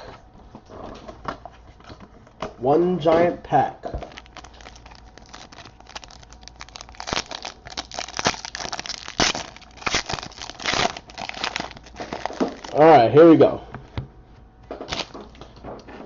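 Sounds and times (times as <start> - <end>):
wrapper tearing and crinkling: 4.0 - 12.9, 14.8 - 15.5.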